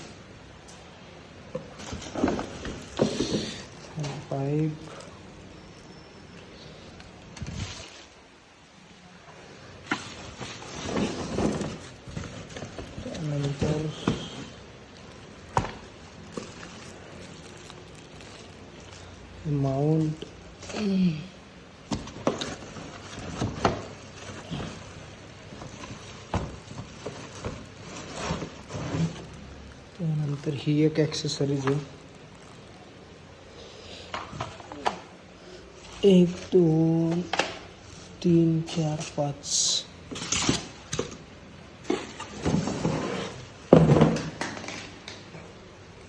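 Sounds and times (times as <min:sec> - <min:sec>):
packaging rustling: 0:01.5 - 0:08.2, 0:09.8 - 0:21.0, 0:21.7 - 0:30.4
plastic parts being handled: 0:01.5 - 0:08.2, 0:09.8 - 0:20.9, 0:21.7 - 0:30.0.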